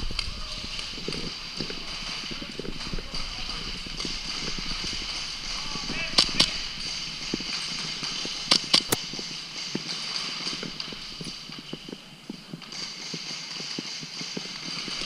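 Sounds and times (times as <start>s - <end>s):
sharp cracks: 0.0s - 15.0s.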